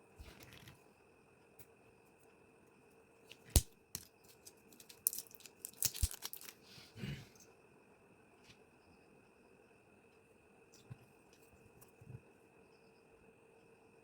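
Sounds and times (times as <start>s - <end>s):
packaging crinkling and tearing: 4.6s - 6.6s
packaging rustling: 4.7s - 6.6s.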